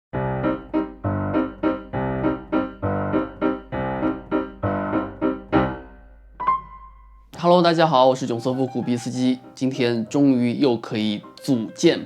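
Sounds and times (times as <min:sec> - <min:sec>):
electric piano chords: 0:00.1 - 0:07.3.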